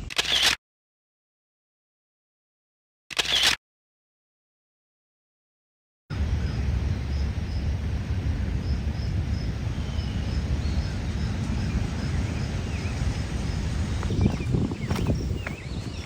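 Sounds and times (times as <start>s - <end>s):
wind rumble on microphone: 6.1s - 16.0s
insects chirping: 6.2s - 16.0s.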